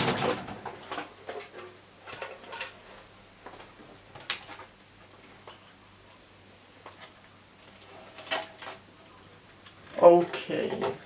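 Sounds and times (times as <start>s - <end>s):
computer parts clicking and knocking: 0.0s - 1.1s.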